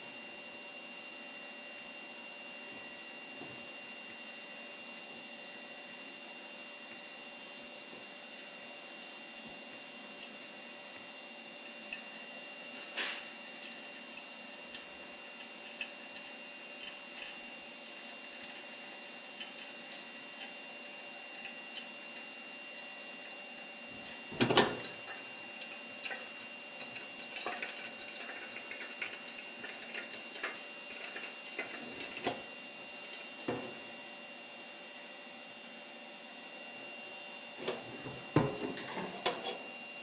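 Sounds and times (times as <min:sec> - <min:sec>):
liquid trickling and dripping: 0:13.3 - 0:32.4.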